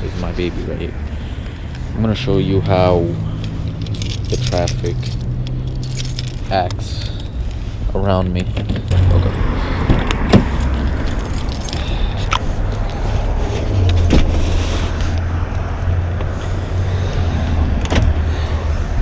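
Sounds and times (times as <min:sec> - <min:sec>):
steady low rumble: 0:00.0 - 0:19.0
car keys jangling: 0:02.6 - 0:07.6, 0:10.0 - 0:15.3.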